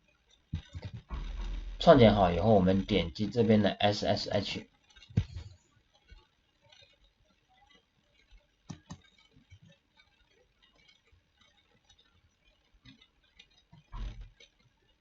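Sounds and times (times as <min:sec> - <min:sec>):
faint ticks: 0:00.0 - 0:01.8, 0:04.3 - 0:15.0
computer mouse clicks: 0:08.7 - 0:12.2.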